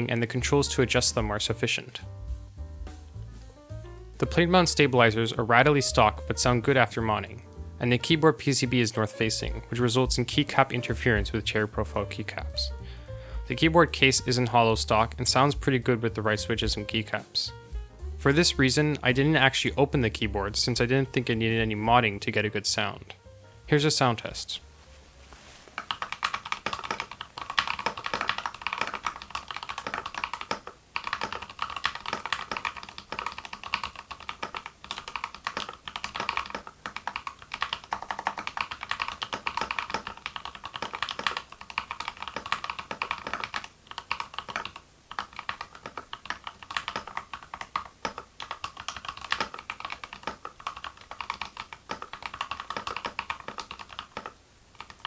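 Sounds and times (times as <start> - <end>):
mechanical keyboard typing: 25.8 - 55.0.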